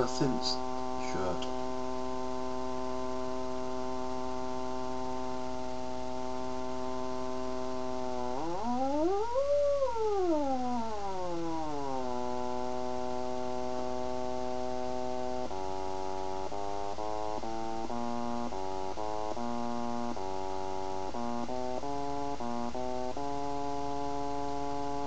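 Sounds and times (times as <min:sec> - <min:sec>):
mains hum: 0:00.0 - 0:25.0
stepped synth notes: 0:06.3 - 0:25.0
synth tone from small speaker: 0:08.3 - 0:12.1.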